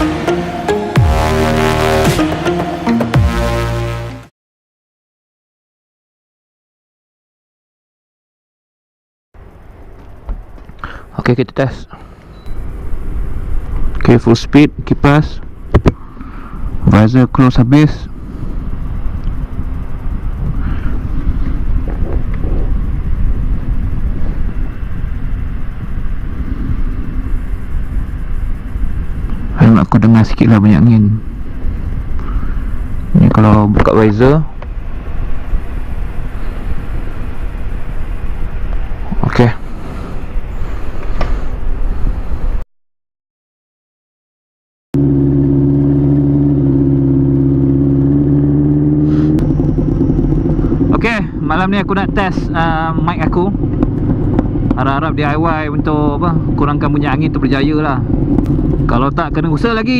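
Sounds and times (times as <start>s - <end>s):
engine running at low revs: 0.0s - 4.2s, 17.9s - 42.6s, 45.0s - 59.9s
wind noise on microphone: 18.1s - 29.9s, 31.1s - 42.6s, 49.4s - 59.9s.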